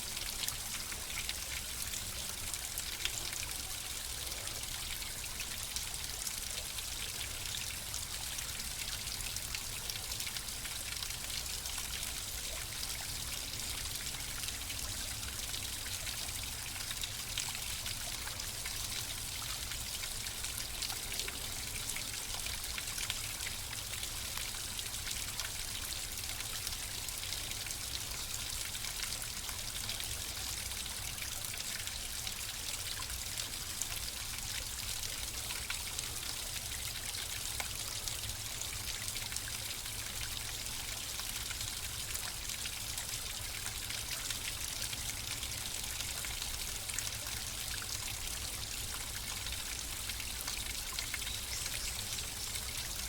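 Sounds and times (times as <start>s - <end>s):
water splashing and trickling: 0.0s - 53.0s.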